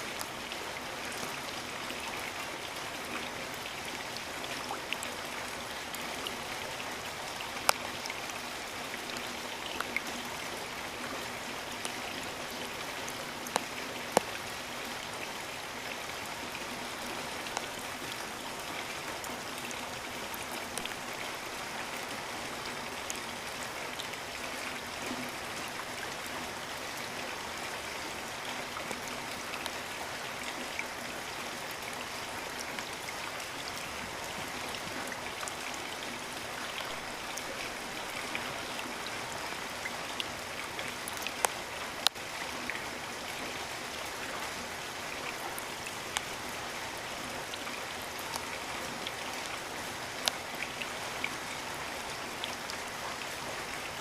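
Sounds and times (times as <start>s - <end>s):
steady rain: 0.0s - 54.0s.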